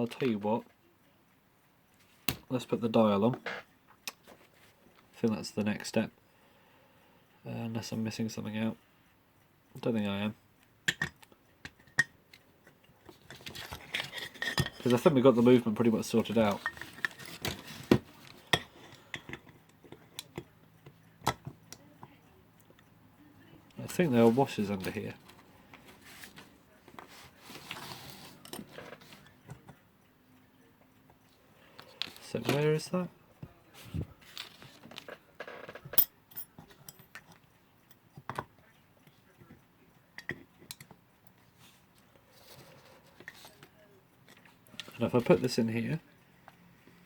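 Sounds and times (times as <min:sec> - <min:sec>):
metal clock parts clinking: 0:10.9 - 0:21.5, 0:35.9 - 0:38.3.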